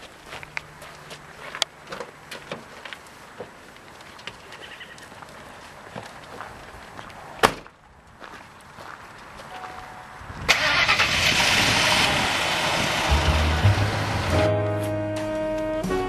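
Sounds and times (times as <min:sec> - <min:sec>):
truck engine starting and running: 0:09.9 - 0:15.7.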